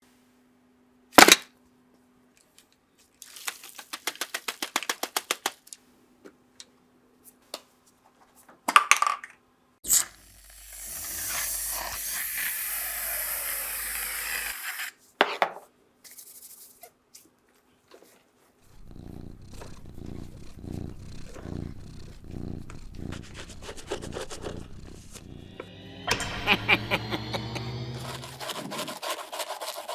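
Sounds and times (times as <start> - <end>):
hiss: 9.9 - 14.9
filing metal: 28.0 - 29.9.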